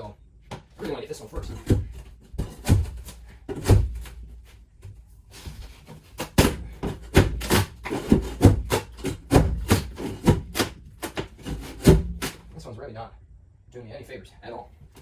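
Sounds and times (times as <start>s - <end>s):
metal scraping on wood: 5.3s - 12.5s.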